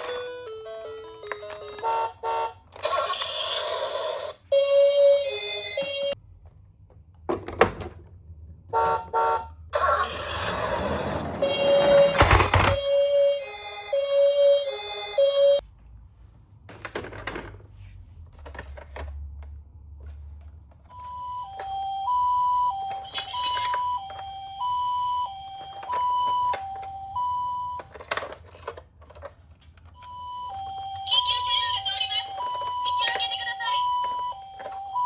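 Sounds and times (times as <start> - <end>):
toy electronic two-tone siren: 0.0 - 6.2, 9.8 - 15.6, 20.9 - 28.3, 30.0 - 35.0
knocks and handling sounds: 11.1 - 12.8, 16.6 - 22.0, 22.7 - 31.1.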